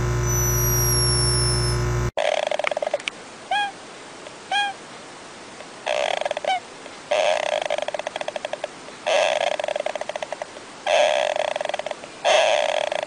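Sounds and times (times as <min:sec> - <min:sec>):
short upward chirps: 0:00.2 - 0:02.0
rattling croaking animal calls: 0:02.2 - 0:03.7, 0:05.8 - 0:13.0.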